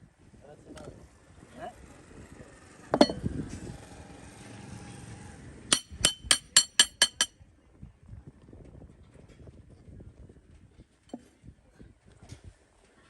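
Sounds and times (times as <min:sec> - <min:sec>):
faint workshop hum: 0:00.1 - 0:08.0
metallic clinks of struck steel: 0:05.7 - 0:07.3.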